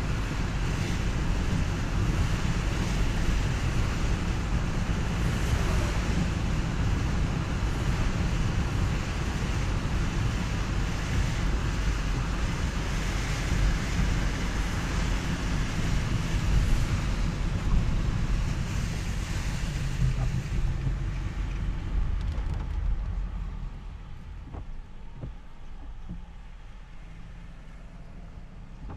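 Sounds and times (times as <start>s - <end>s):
car engine and road rumble: 0.0s - 28.9s
tyre spray and rain hiss: 0.2s - 22.3s.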